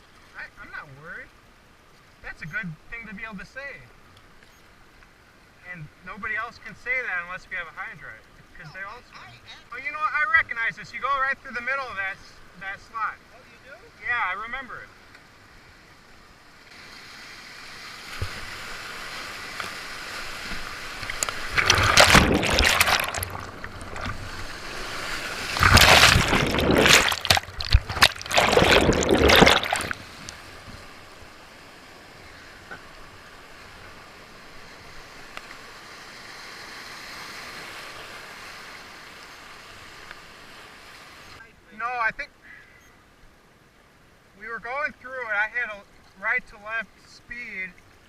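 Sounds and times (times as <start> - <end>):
river rushing: 16.7 - 41.4
water splashing over boat: 20.2 - 30.8.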